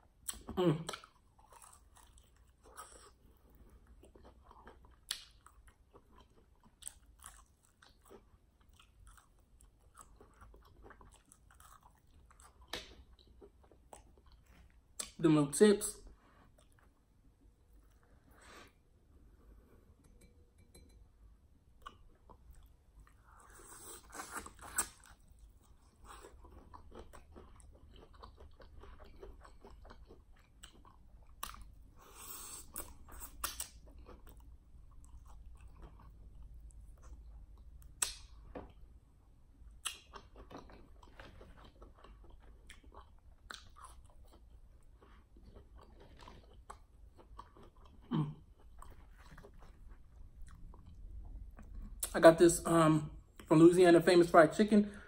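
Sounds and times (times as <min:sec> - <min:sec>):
crunchy chewing of chicken: 0:00.3 - 0:14.9, 0:21.8 - 0:38.8, 0:39.6 - 0:52.0.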